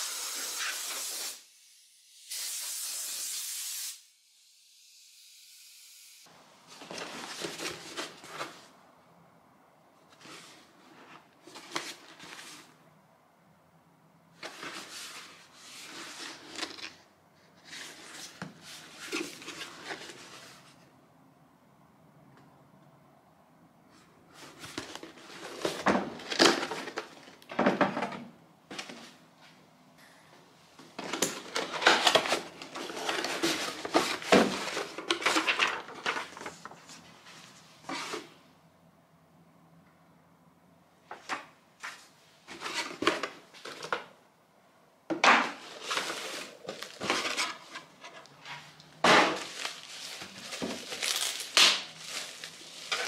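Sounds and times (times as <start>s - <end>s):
rustling and scraping: 6.7s - 8.8s, 10.0s - 12.8s, 14.4s - 20.8s, 30.8s - 38.5s, 41.1s - 44.2s, 45.4s - 53.0s.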